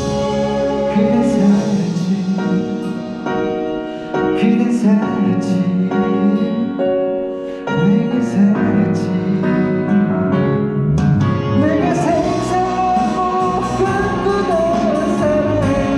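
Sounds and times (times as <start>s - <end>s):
slow love song with singing: 0.0s - 10.6s, 11.4s - 15.9s
keyboard accompaniment: 0.0s - 15.9s.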